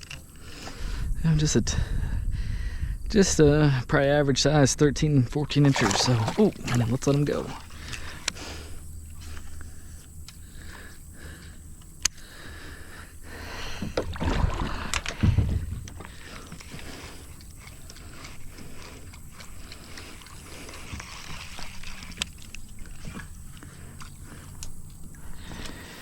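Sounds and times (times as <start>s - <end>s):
low steady background noise: 0.0s - 26.0s
water splashing and sloshing: 5.5s - 9.9s, 13.4s - 26.0s.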